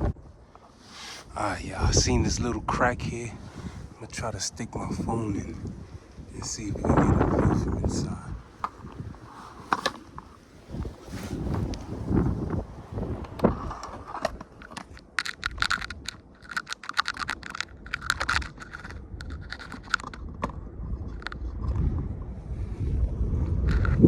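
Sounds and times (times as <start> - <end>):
microphone handling rumble: 0.0 - 16.4, 17.1 - 24.0
phone scraping against concrete: 0.6 - 1.6, 3.3 - 4.3, 6.4 - 20.2.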